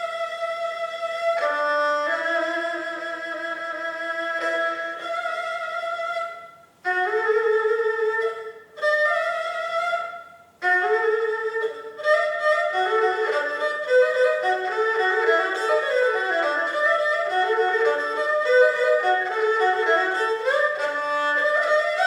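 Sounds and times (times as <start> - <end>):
erhu playing slow melody: 0.0 - 22.0.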